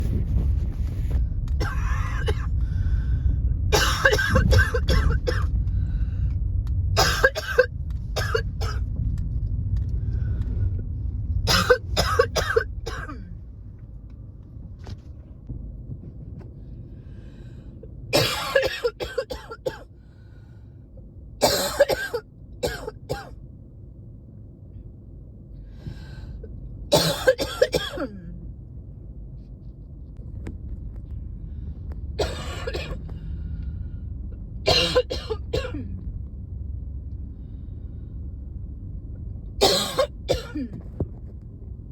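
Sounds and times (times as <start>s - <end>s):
low rumble: 0.0s - 21.5s, 22.1s - 41.9s
person coughing: 1.6s - 2.5s, 3.8s - 5.5s, 7.0s - 8.8s, 11.5s - 13.3s, 18.2s - 19.8s, 21.4s - 23.3s, 26.9s - 28.3s, 32.2s - 33.0s, 34.7s - 35.9s, 39.6s - 40.8s.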